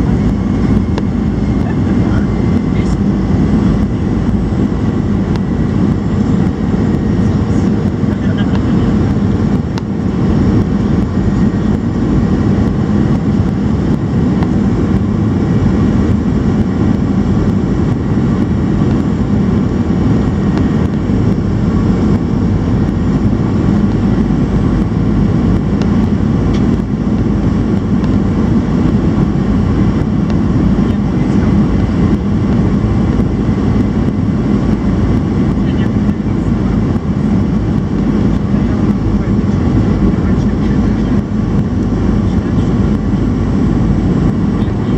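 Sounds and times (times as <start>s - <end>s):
jet engine cabin drone: 0.0s - 44.9s.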